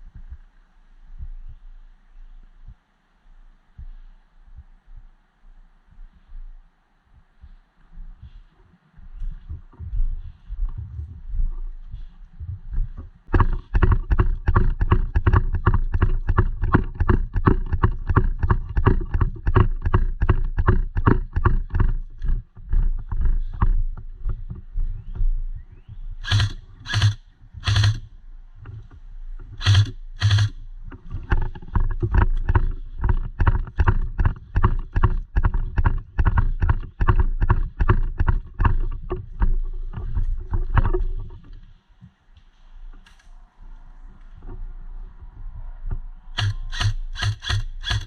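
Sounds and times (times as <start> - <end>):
quick footsteps: 7.2 - 25.5, 26.2 - 28.0, 28.6 - 43.2
sharp bursts: 26.2 - 28.0, 29.6 - 30.6, 46.4 - 48.0.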